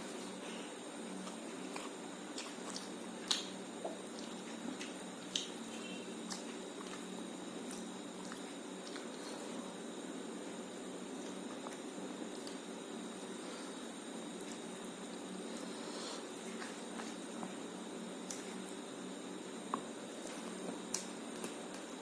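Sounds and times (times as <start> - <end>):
person chewing wetly: 1.2 - 9.6, 11.1 - 12.7.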